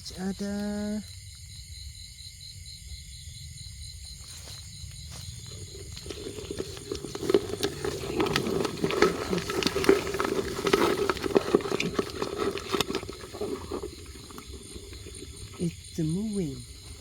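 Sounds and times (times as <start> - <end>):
dry leaves rustling: 4.3 - 15.6.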